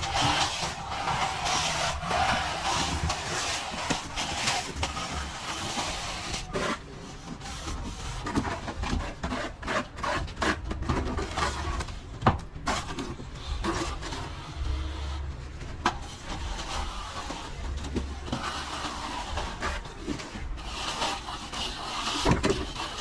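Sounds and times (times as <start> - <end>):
trowel scraping plaster: 0.0 - 11.9, 16.0 - 23.0.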